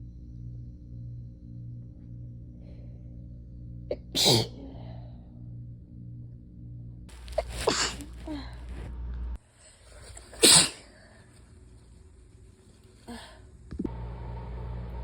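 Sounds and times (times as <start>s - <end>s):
low hum: 0.0s - 15.0s
person sneezing: 3.9s - 4.6s, 7.2s - 8.9s, 10.2s - 10.9s.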